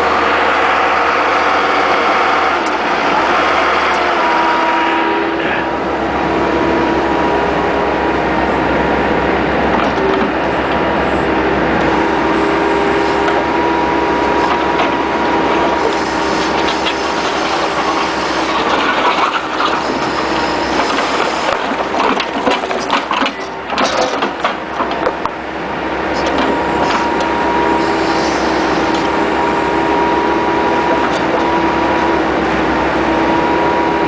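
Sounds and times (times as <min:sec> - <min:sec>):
loader engine whining: 0:00.0 - 0:34.0
clattering and clanking: 0:14.4 - 0:25.4, 0:26.1 - 0:27.3.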